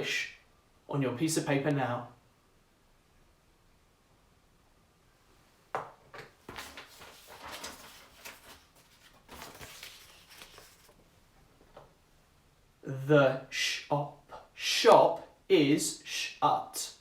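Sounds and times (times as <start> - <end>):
handling rustles and light knocks: 5.8 - 11.9.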